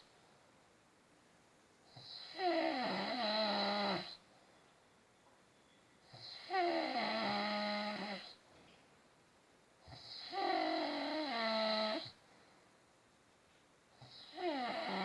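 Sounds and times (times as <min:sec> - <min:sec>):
man snoring: 0:02.0 - 0:04.2, 0:06.2 - 0:08.3, 0:09.9 - 0:12.1, 0:14.1 - 0:15.0.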